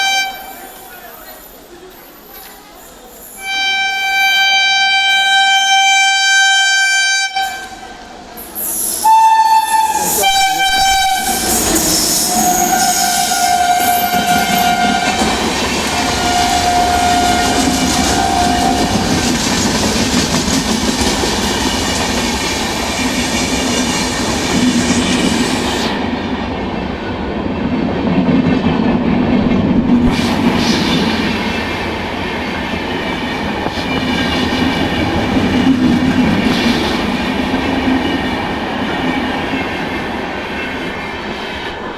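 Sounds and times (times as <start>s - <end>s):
train horn blasts: 0.0s - 0.8s, 3.4s - 8.0s, 9.0s - 19.3s
train wheels clattering on rails: 9.9s - 41.9s.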